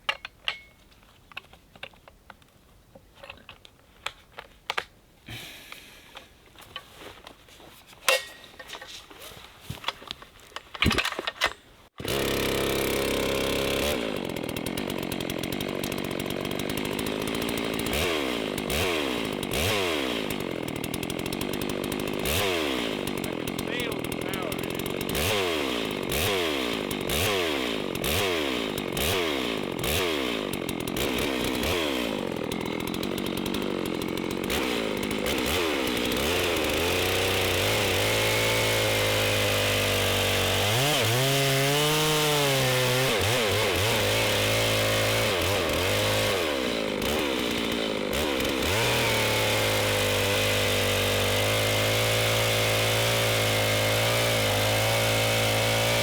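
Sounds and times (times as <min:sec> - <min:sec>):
chainsaw revving and cutting wood: 0:05.3 - 0:06.1, 0:12.0 - 0:56.0.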